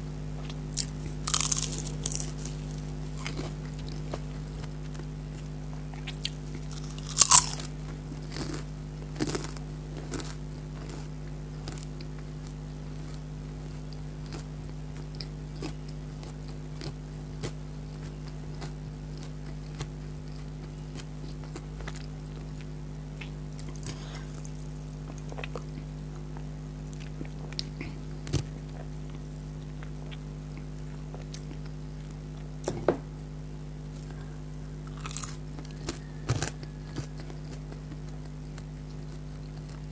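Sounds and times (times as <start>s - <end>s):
low hum: 0.0s - 39.9s
person chewing food: 0.4s - 32.8s, 34.0s - 39.9s
sharp crunches: 0.8s - 5.0s, 6.0s - 11.9s, 34.8s - 37.6s.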